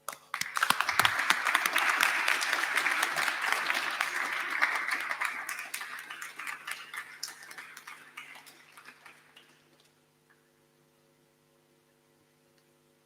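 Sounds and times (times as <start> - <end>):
audience applauding: 0.1 - 9.6.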